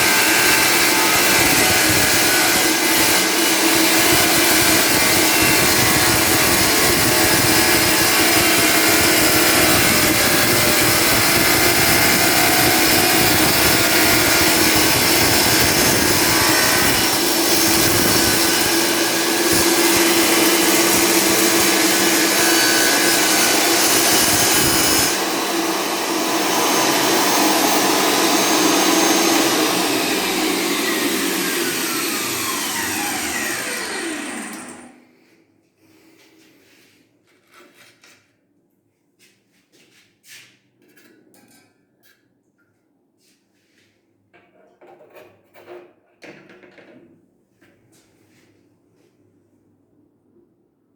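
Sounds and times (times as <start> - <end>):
tile saw cutting tile: 0.0 - 35.0
saw blade whine coasting down: 4.1 - 35.0.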